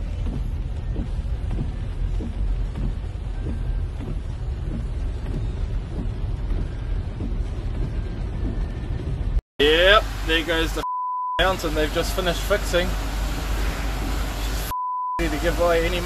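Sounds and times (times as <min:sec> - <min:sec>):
heavy rain pouring: 0:00.0 - 0:10.8, 0:11.4 - 0:16.0
floodwater rushing: 0:11.4 - 0:16.0.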